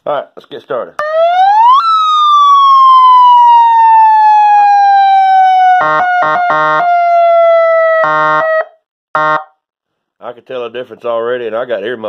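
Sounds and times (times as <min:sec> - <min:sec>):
police siren wail: 0:01.0 - 0:09.4.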